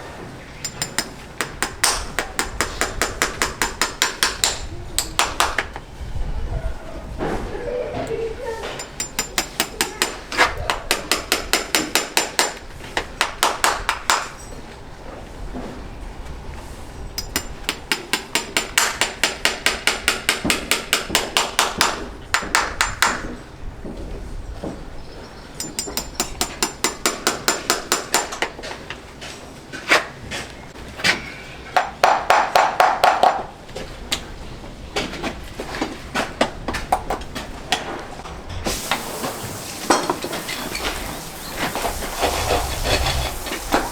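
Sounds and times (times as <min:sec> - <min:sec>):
hammer striking metal: 0:00.6 - 0:05.6, 0:08.8 - 0:12.6, 0:17.2 - 0:23.3, 0:25.6 - 0:28.5.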